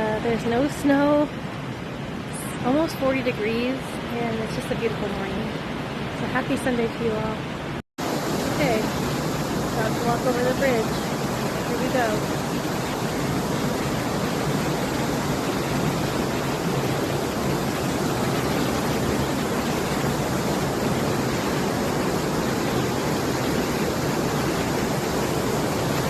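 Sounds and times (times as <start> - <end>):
river rushing through rapids: 8.0 - 26.0.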